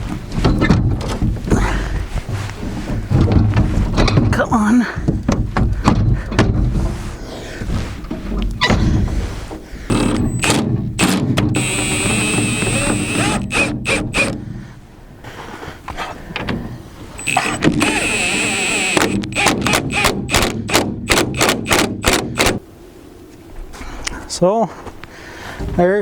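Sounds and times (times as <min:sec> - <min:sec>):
power driver motor whine: 0:09.9 - 0:14.4, 0:17.2 - 0:20.6
rapid sharp clacking: 0:17.2 - 0:22.6.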